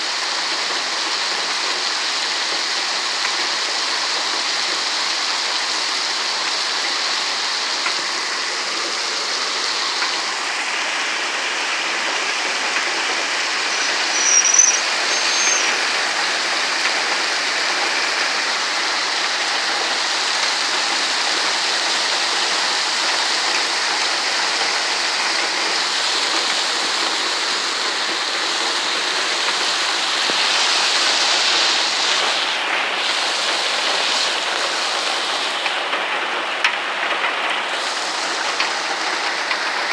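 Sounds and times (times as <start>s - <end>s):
heavy rain pouring: 0.0s - 39.9s
high squeak: 13.5s - 16.0s.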